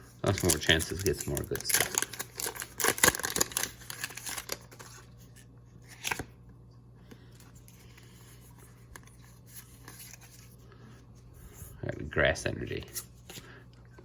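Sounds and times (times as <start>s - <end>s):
foil wrapper tearing and crinkling: 0.2s - 5.1s.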